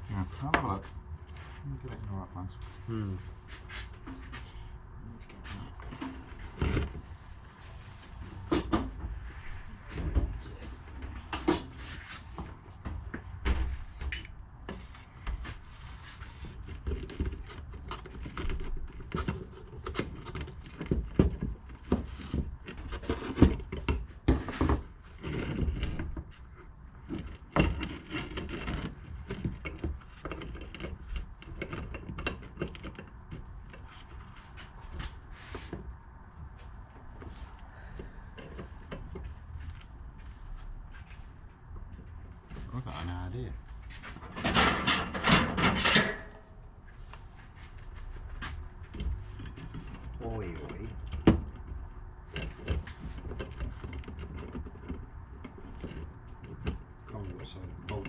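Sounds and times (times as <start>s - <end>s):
metal parts and tools clinking: 44.2s - 46.5s.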